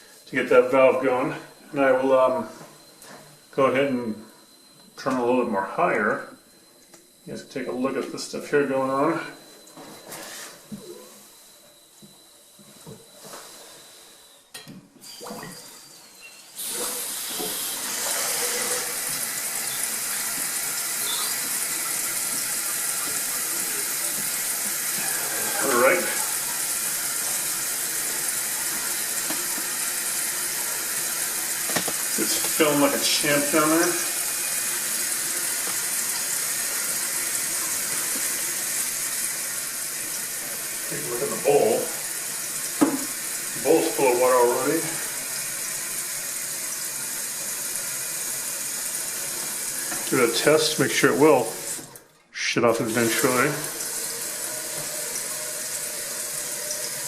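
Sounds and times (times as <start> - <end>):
toilet tank filling with water: 14.9 - 57.0
thin whistle: 21.0 - 21.4.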